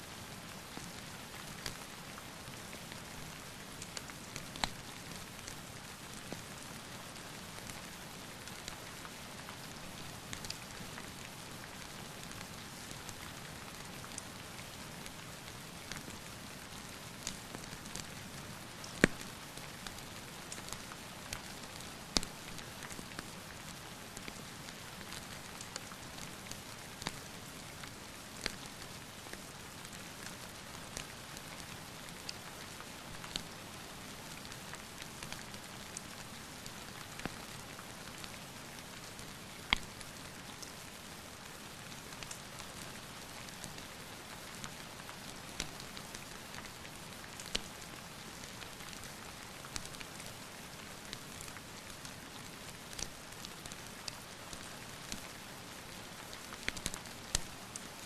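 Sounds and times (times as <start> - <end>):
steady rain falling: 0.0 - 58.0
wood fire crackling and popping: 18.8 - 20.0, 39.7 - 39.9, 52.9 - 53.2, 56.6 - 57.6.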